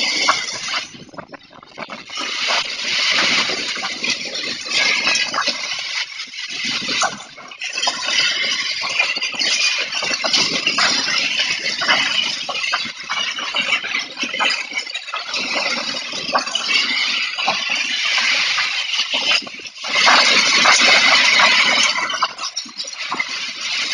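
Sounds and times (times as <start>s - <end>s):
gusting wind: 0.0s - 7.5s
small ticks and rattles: 0.0s - 23.9s.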